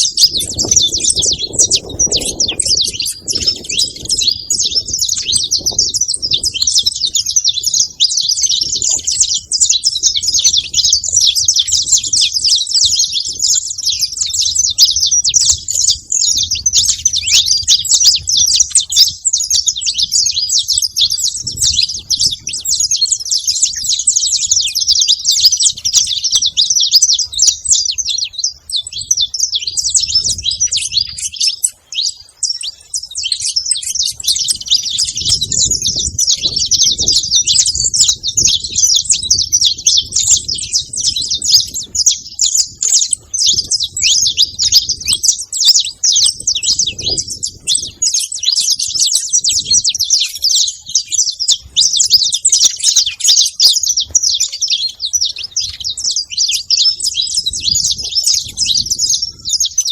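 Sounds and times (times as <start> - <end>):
finch chirping: 0.0 - 59.9.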